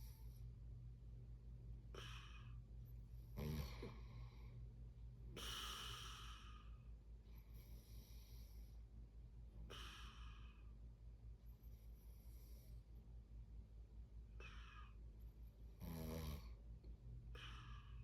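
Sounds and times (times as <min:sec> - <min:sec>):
slow airy breathing: 0:01.9 - 0:09.0
low snoring snort: 0:03.3 - 0:04.0, 0:05.4 - 0:06.6, 0:15.8 - 0:16.6.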